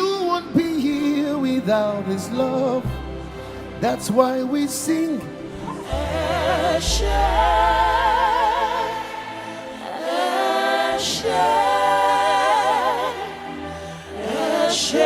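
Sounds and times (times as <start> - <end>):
choir singing gospel: 0.0 - 15.0
low steady bass: 5.5 - 9.2.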